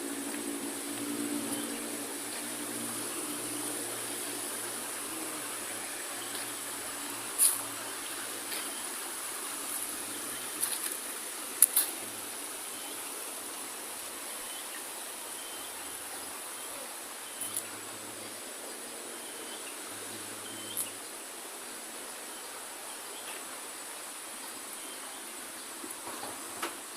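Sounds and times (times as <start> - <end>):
rushing hiss: 0.0 - 21.5
high-pitched insect chorus: 0.0 - 26.9.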